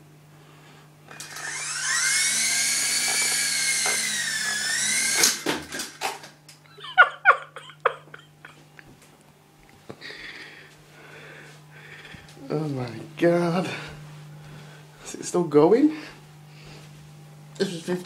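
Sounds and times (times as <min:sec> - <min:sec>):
model helicopter rotor whine: 0:01.1 - 0:06.0.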